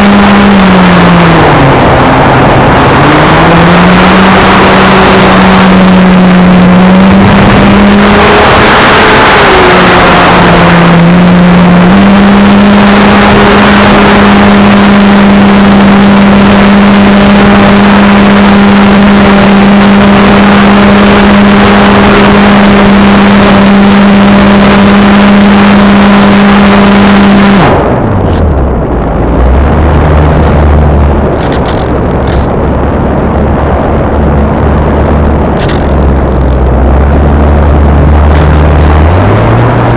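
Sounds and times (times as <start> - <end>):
model airplane motor droning: 0.0 - 27.7
rushing noise: 0.0 - 39.9.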